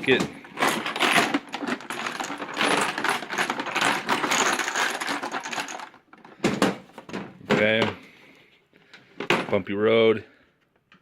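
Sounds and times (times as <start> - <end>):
sockets rattling in plastic case: 0.4 - 6.3.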